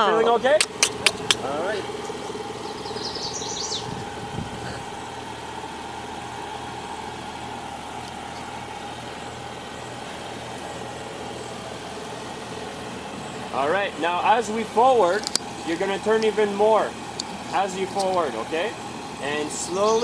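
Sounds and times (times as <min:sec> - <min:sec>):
vehicle engine idling: 0:00.0 - 0:20.0
high chirping: 0:00.8 - 0:05.6, 0:19.5 - 0:20.0.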